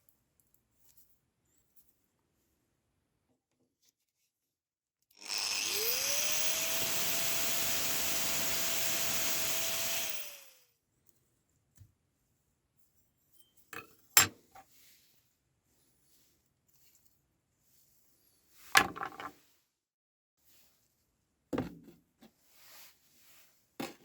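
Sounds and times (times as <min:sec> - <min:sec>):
electric power tool cutting: 0:05.2 - 0:10.6.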